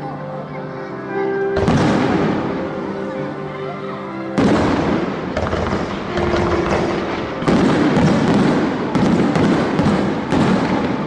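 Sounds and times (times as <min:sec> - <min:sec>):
fireworks booms: 0:01.6 - 0:02.7, 0:04.4 - 0:11.0
fireworks crackling: 0:01.6 - 0:03.0, 0:04.4 - 0:11.0.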